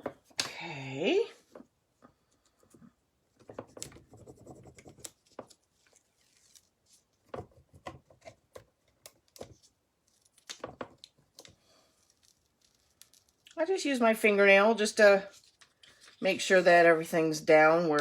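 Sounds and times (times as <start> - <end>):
scratchy rubbing on wood: 3.6 - 5.2.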